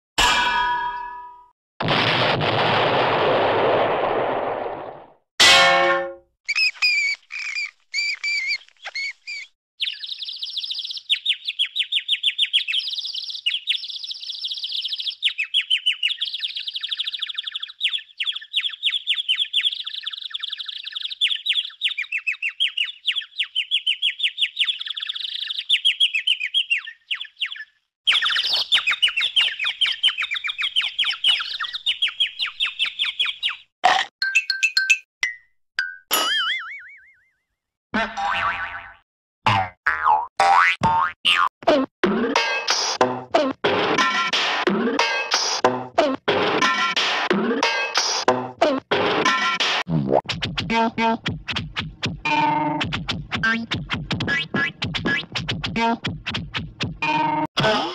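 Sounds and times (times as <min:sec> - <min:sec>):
high-pitched bird chirping: 0:06.5 - 0:33.7.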